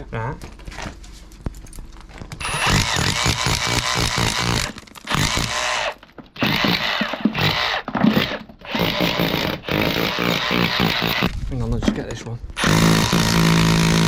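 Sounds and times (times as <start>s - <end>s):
power tool cutting brick mortar: 2.4s - 11.4s, 12.6s - 14.0s.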